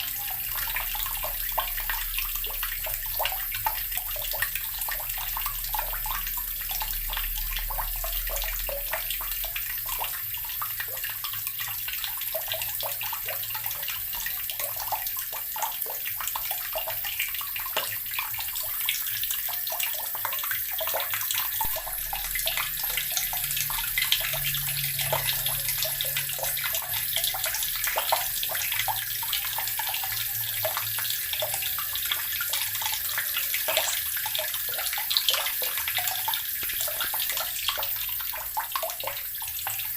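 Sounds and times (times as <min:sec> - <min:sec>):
tap water splashing: 0:33.7 - 0:39.9.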